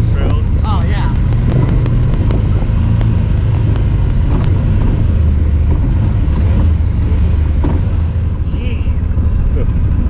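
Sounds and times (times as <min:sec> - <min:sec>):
engine running while driving: 0:00.0 - 0:10.0
sharp ticks: 0:00.2 - 0:04.6.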